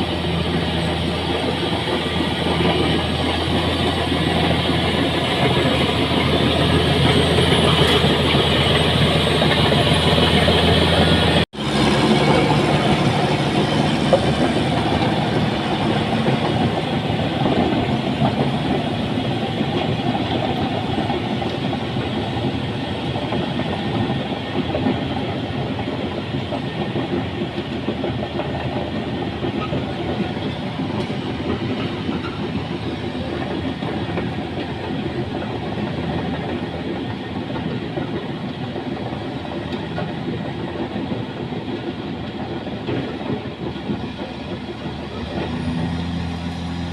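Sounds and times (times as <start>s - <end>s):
bulldozer diesel engine: 0.0s - 46.9s
steel tracks clanking: 0.0s - 46.9s.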